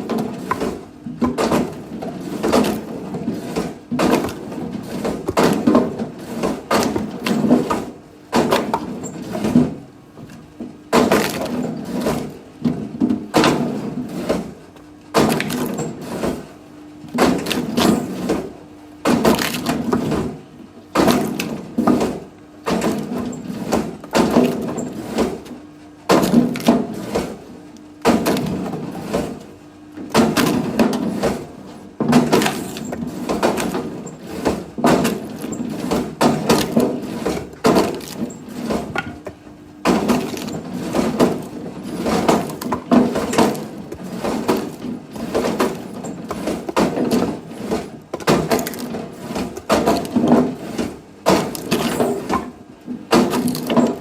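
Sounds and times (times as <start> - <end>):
firewood splitting with crack: 19.1 - 19.8, 34.5 - 39.1, 39.8 - 47.5, 48.1 - 50.3.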